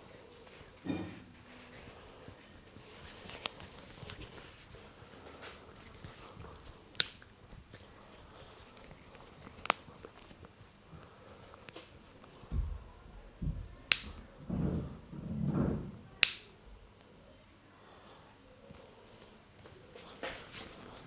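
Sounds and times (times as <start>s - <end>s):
hands rubbing skin: 1.4s - 10.8s
dull thumps: 12.5s - 16.2s.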